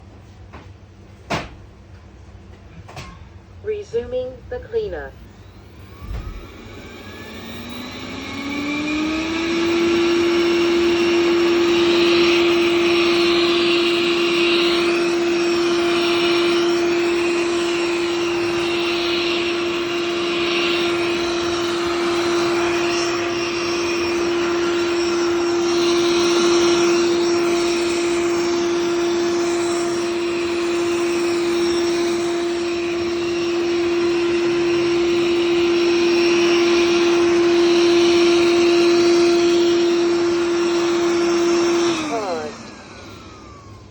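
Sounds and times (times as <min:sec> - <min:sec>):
robot vacuum motor whine: 0:05.0 - 0:43.9.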